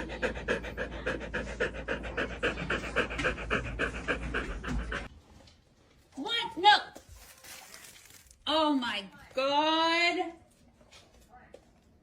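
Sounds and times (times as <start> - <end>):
dog panting rapidly: 0.0 - 5.1.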